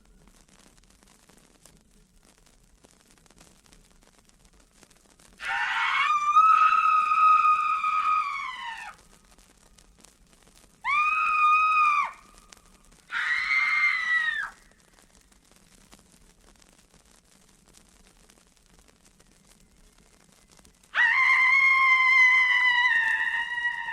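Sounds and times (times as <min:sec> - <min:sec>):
high-pitched screams: 0:05.4 - 0:09.0, 0:10.8 - 0:12.5, 0:13.1 - 0:14.7, 0:20.9 - 0:23.9.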